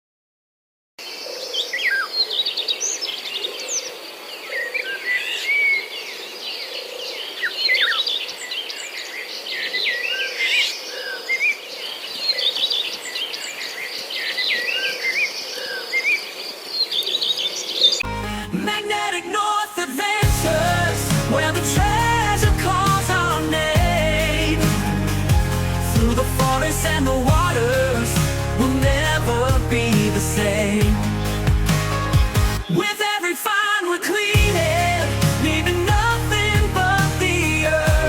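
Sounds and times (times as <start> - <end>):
birds singing in chorus: 1.0 - 18.1, 20.6 - 33.0
music: 18.0 - 33.3, 34.2 - 38.0.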